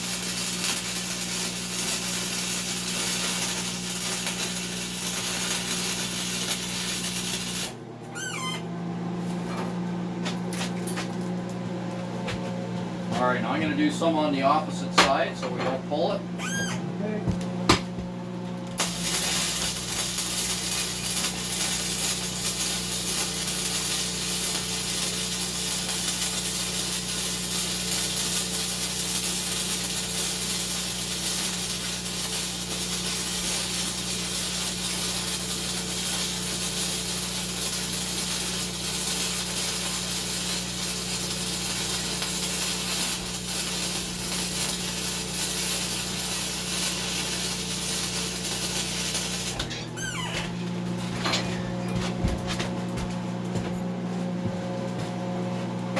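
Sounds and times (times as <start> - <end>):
welding arc crackling: 0.0 - 7.8, 18.7 - 50.1.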